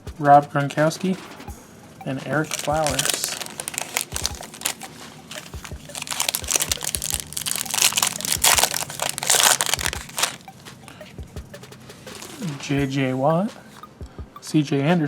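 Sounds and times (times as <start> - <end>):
foil wrapper crinkling: 2.4 - 10.4.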